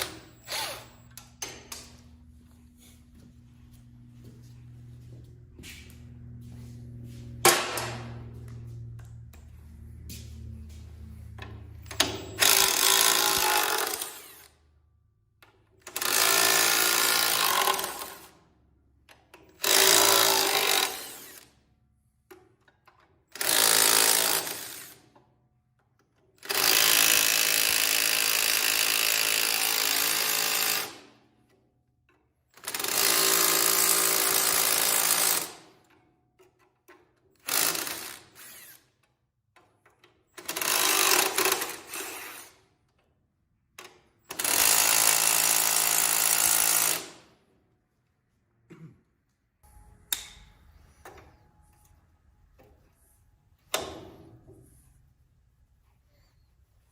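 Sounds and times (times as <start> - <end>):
impact wrench bursts: 0.0 - 1.6, 11.8 - 14.7, 15.8 - 18.4, 19.6 - 21.6, 23.3 - 25.1, 26.4 - 31.2, 32.5 - 35.8, 37.4 - 38.9, 40.3 - 42.6, 44.2 - 47.3.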